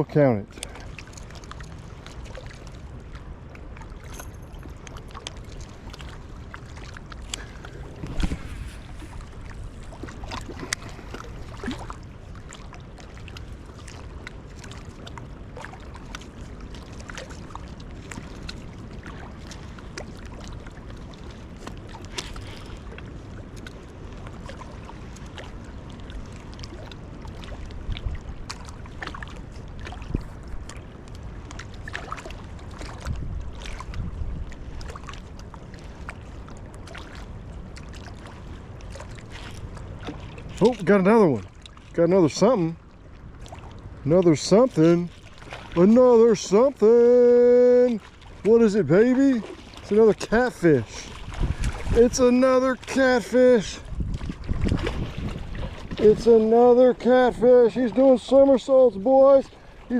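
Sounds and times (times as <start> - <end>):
flowing river water: 0.0 - 59.9
wind on microphone: 3.2 - 12.8, 13.9 - 37.6, 49.4 - 59.9.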